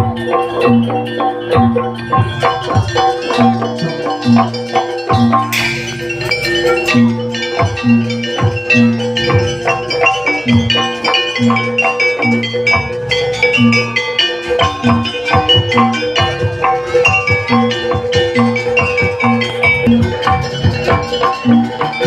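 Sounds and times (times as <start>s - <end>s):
gamelan music: 0.0s - 22.0s.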